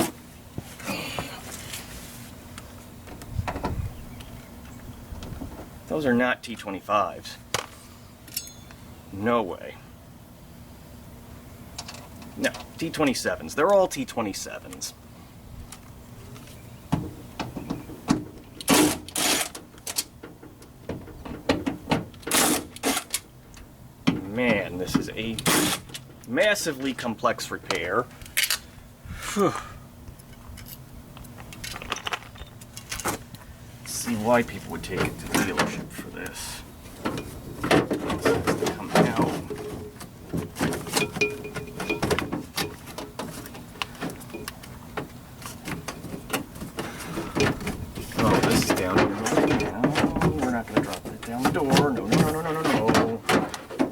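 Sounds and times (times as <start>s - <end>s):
rattling and scraping: 30.3s - 53.9s.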